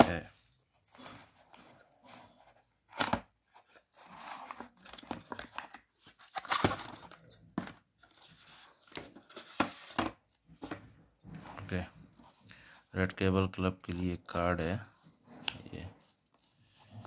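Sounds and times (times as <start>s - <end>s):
cardboard and paper rustling: 0.8s - 10.8s.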